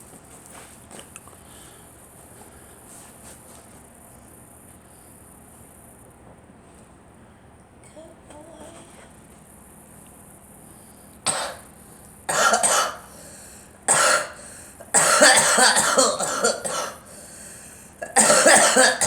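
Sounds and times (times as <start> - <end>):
girl coughing: 11.3 - 11.6, 12.3 - 13.1, 13.9 - 17.1, 18.0 - 19.0.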